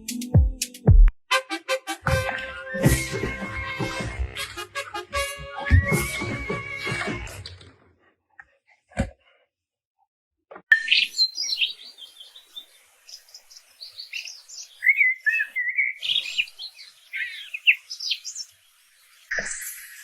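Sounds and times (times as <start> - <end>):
bird chirping and twittering: 10.7 - 20.0.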